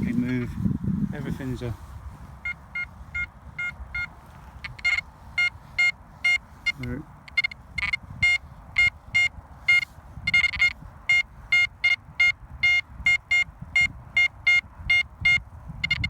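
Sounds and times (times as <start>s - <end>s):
rustle of movement: 0.0s - 11.5s
metal detector beeping: 2.4s - 16.0s.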